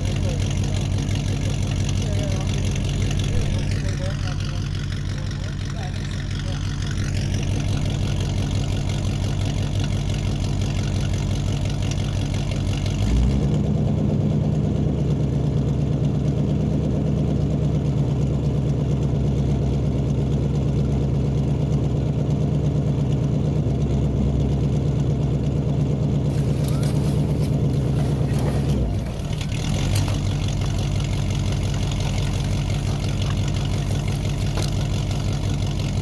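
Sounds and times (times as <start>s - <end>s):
low dull engine hum: 0.0s - 36.0s
vehicle engine idling: 0.0s - 36.0s.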